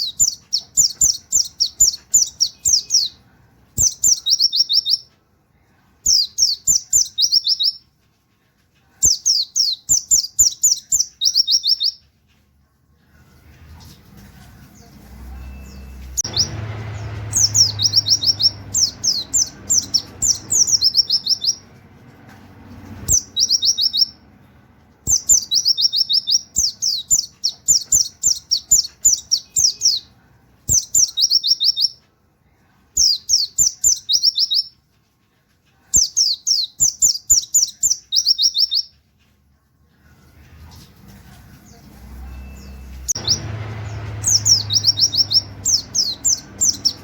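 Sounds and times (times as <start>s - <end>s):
bird singing high quick notes: 15.4s - 21.7s, 42.2s - 47.0s.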